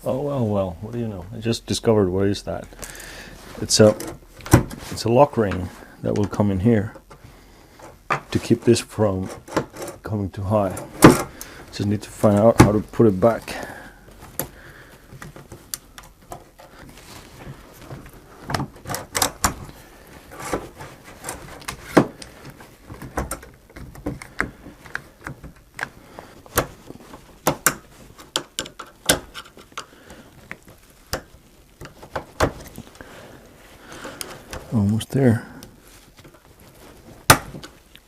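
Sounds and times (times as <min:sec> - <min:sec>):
router parts clicking and knocking: 0:27.4 - 0:29.9.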